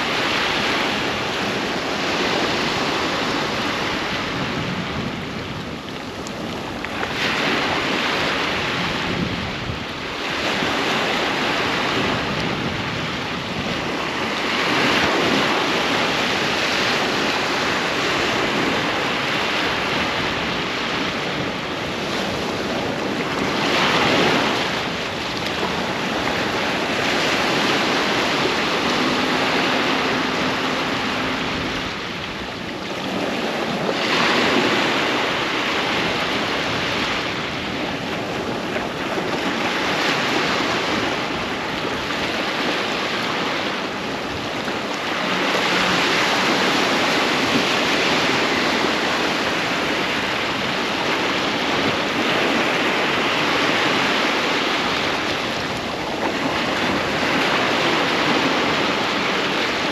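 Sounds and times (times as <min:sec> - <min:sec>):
sea waves breaking on beach: 0:00.0 - 0:59.9
wind buffeting microphone: 0:00.0 - 0:59.9.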